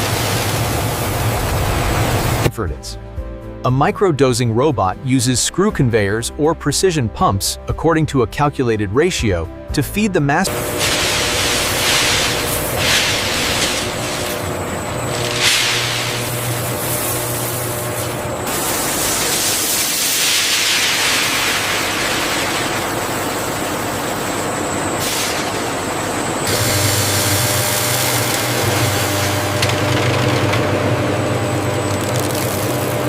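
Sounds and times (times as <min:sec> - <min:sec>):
factory machinery hissing: 0:10.5 - 0:30.0.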